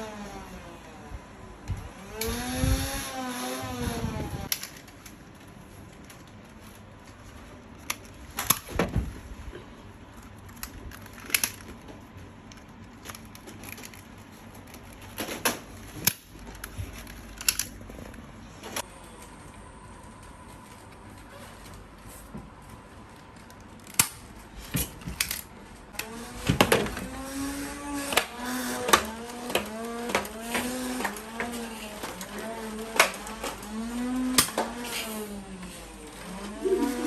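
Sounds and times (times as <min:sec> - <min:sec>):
electric flywheel motor whirring: 0:00.0 - 0:04.5, 0:25.9 - 0:37.0.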